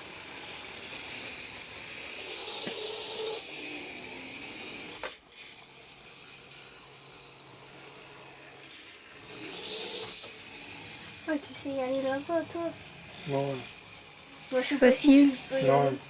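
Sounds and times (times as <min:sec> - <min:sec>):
small electric motors whirring: 0:00.0 - 0:16.0.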